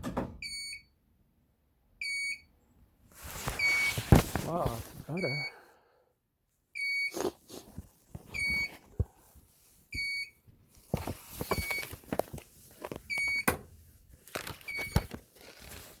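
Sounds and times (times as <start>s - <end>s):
sharp knocks and clunks: 0.0s - 0.4s
short high warning beeps: 5.2s - 5.6s.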